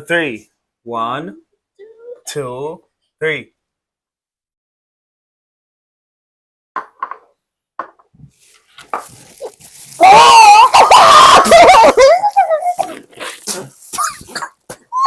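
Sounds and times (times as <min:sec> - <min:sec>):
faint small noises: 0:07.0 - 0:15.0
loud wordless vocal outburst: 0:10.0 - 0:13.8.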